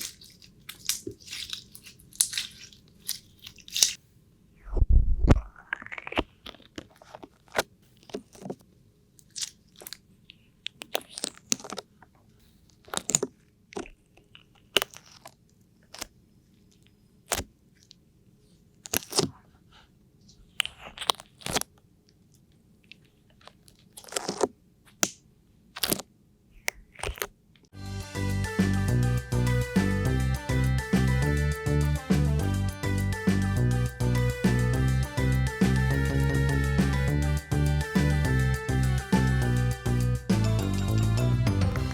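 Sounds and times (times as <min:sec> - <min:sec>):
crisp crunches and clicks: 0:00.0 - 0:04.0, 0:04.6 - 0:27.7.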